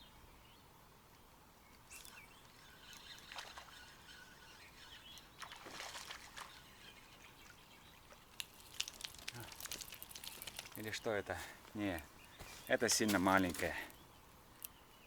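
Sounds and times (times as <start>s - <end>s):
low steady hiss: 0.0s - 15.0s
faint bird chirps: 1.6s - 11.3s.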